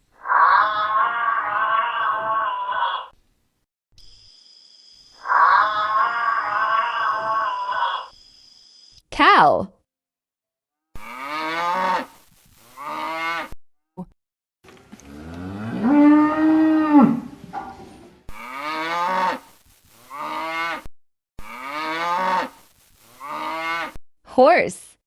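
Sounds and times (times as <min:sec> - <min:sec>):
cow mooing: 0:00.5 - 0:03.1, 0:05.5 - 0:08.1, 0:11.0 - 0:12.1, 0:12.8 - 0:13.6, 0:15.0 - 0:17.4, 0:18.3 - 0:19.4, 0:20.1 - 0:22.6, 0:23.2 - 0:24.0.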